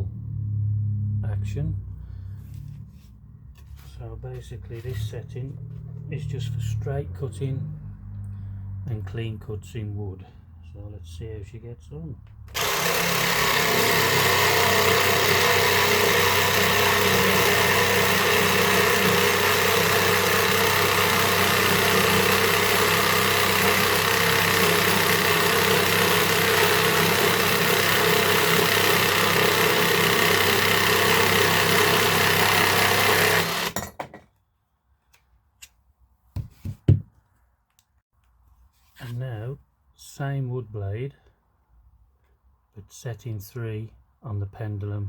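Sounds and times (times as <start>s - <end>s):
jigsaw sawing through wood: 12.5s - 34.0s.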